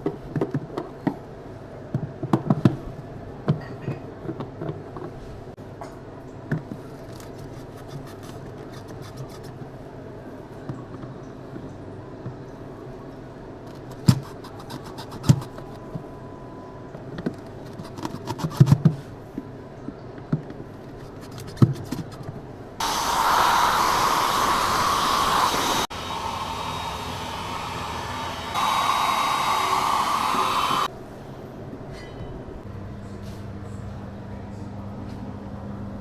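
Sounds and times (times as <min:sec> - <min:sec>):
electric blower running: 0:22.8 - 0:30.9.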